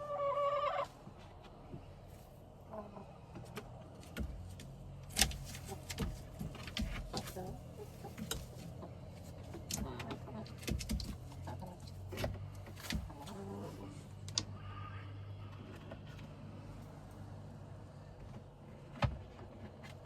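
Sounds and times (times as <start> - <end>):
clicks and rustling of nest material: 3.4 - 14.5.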